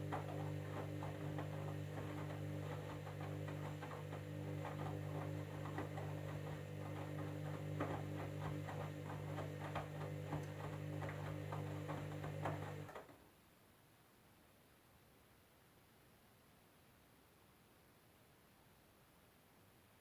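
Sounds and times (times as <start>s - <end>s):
washing machine humming: 0.0s - 13.1s.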